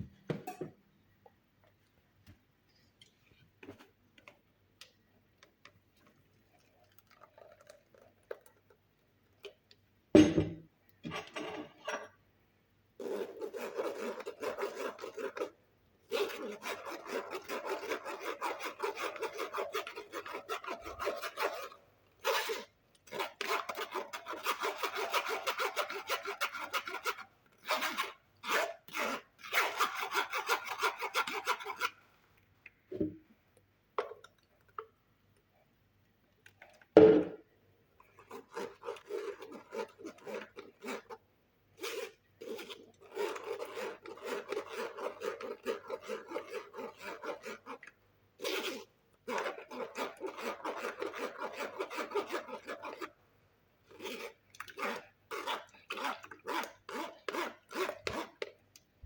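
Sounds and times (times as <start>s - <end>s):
rasping on rough surface: 41.8s - 47.8s, 48.4s - 53.1s, 53.9s - 58.4s.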